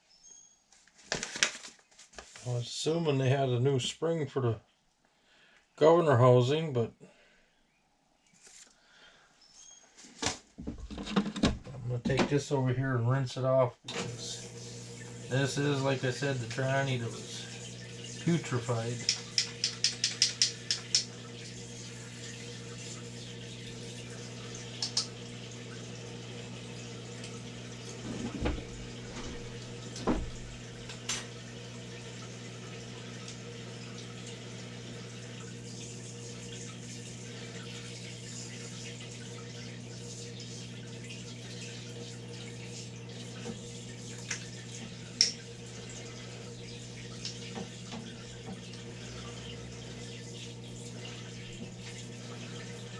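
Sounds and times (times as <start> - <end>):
low electric hum: 10.9 - 52.9
running liquid rinsing: 13.9 - 52.9
sharp clicks: 19.0 - 21.1.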